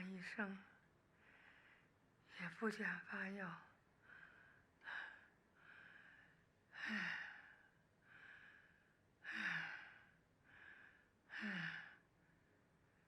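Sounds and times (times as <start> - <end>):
woman laboured breathing: 4.1 - 12.1.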